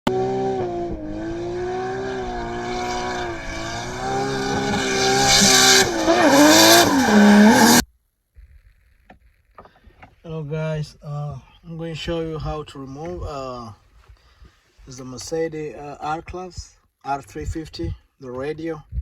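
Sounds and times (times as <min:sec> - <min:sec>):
race car engine revving: 0:00.1 - 0:07.8
tyre squeal: 0:01.9 - 0:07.8.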